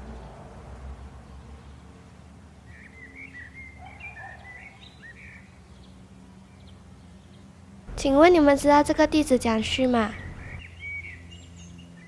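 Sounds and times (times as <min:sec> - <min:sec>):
bird chirping: 0:02.7 - 0:07.5, 0:09.6 - 0:12.0
low outdoor rumble: 0:07.8 - 0:10.6.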